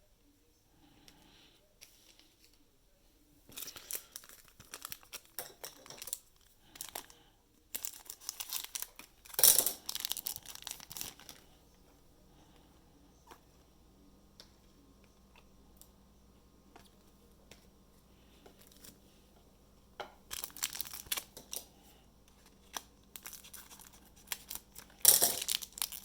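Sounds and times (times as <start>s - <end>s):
card pack wrappers tearing: 3.5s - 6.2s, 6.8s - 11.4s, 20.3s - 21.7s, 22.4s - 26.0s.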